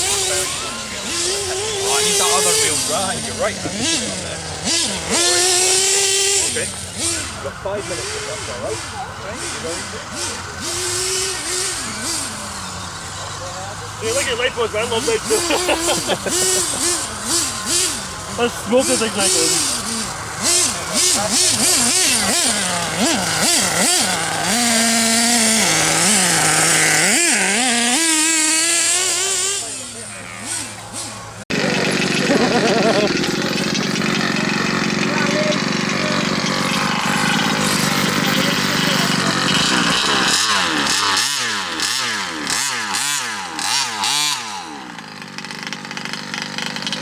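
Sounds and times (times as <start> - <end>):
engine revving: 0.0 - 47.0.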